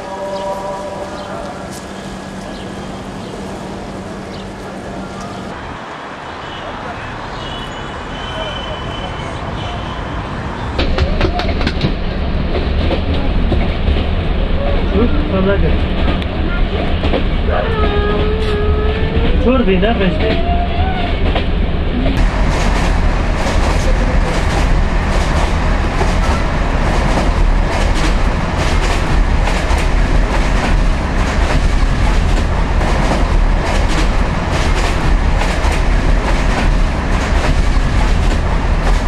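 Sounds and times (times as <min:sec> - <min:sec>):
vehicle low rumble: 0:21.1 - 0:39.0.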